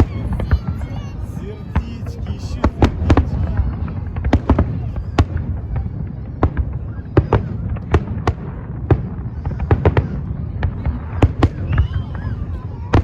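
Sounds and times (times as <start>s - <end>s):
constant low rumble: 0.0s - 13.0s
fireworks bangs: 0.0s - 13.0s.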